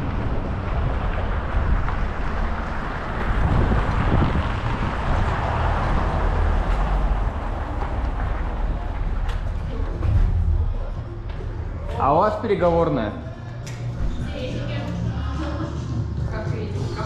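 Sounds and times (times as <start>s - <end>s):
wind rushing over microphone: 0.0s - 7.4s, 9.8s - 11.5s
city traffic rumble: 0.0s - 17.0s.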